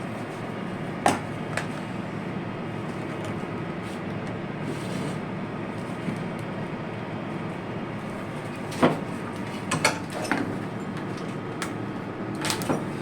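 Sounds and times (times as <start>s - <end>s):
steady background hum: 0.0s - 13.0s.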